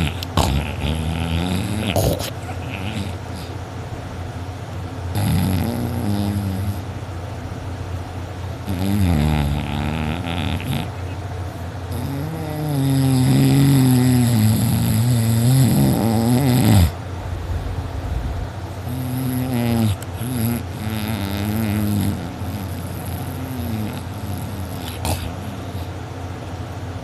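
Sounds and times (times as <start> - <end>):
person snoring loudly: 0.0 - 3.5, 5.1 - 6.9, 8.6 - 11.2, 11.9 - 17.0, 18.8 - 25.9.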